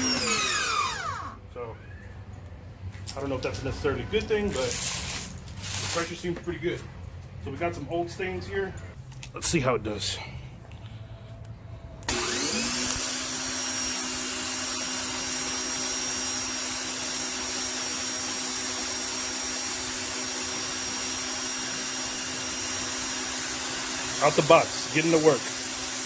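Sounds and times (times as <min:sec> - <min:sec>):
pressure washer motor hum: 0:00.0 - 0:01.4, 0:12.0 - 0:26.0
water jet hissing on concrete: 0:17.5 - 0:26.0.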